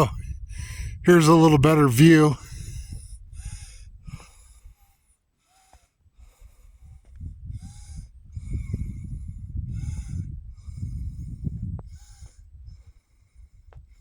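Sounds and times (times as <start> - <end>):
person breathing hard: 0.0 - 1.1.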